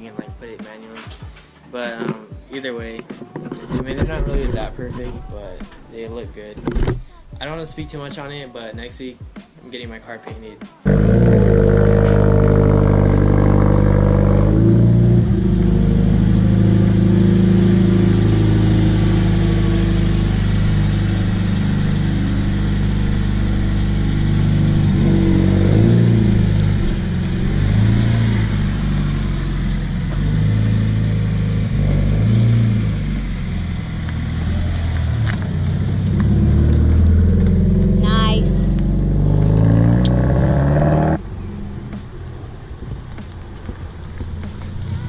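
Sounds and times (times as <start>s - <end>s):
car engine running: 10.9s - 45.0s.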